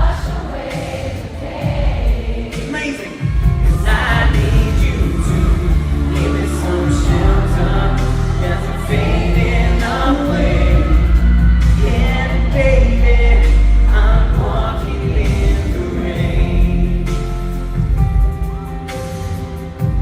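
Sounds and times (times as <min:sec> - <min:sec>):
voices singing together: 0:00.0 - 0:18.6
pop band playing: 0:00.0 - 0:20.0.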